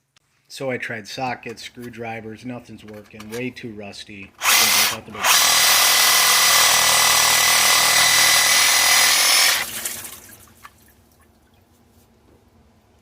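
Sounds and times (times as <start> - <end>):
power tool whining: 4.4 - 9.9.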